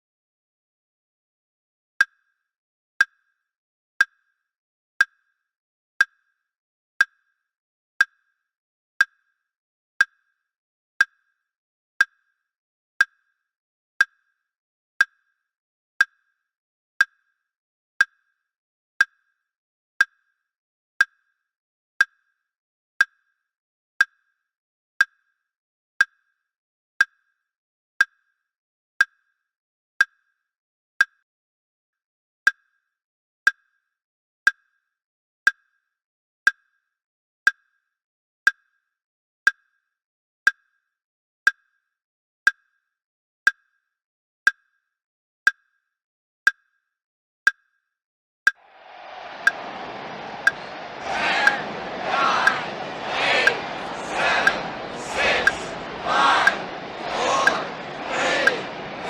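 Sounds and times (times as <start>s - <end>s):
clock ticking: 54.2s - 57.7s.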